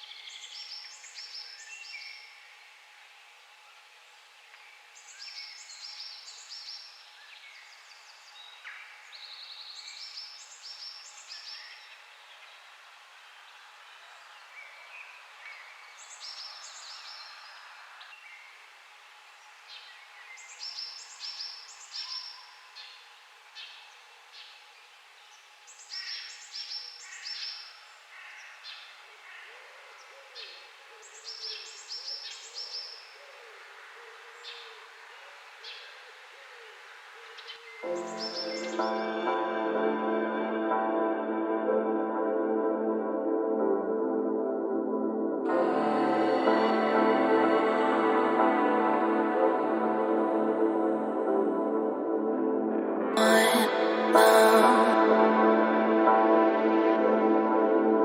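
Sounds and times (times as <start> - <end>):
faint background birds: 0.0 - 40.2.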